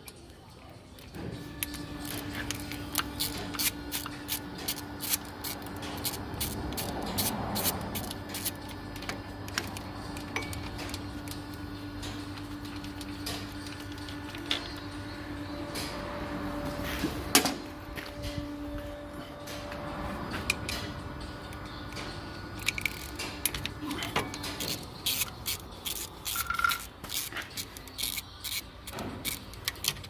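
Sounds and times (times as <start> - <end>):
steady hum: 1.0 - 30.0
hand tools clicking and tapping: 1.6 - 14.9, 20.4 - 30.0.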